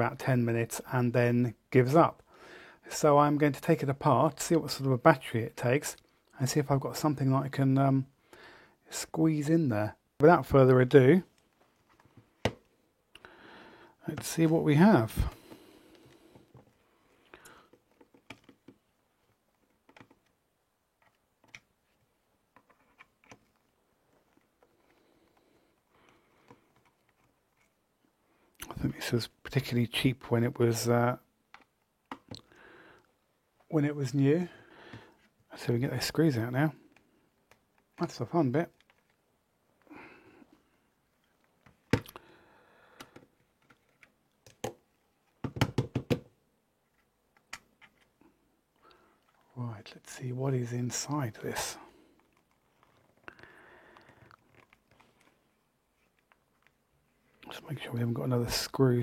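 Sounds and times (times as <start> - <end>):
clicks and taps of plastic device: 43.0 - 46.3.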